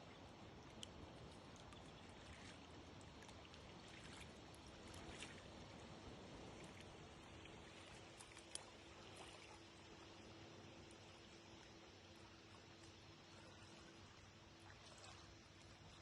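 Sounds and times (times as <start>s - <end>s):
paddle splashes: 0.0s - 16.0s
water trickling: 0.0s - 16.0s.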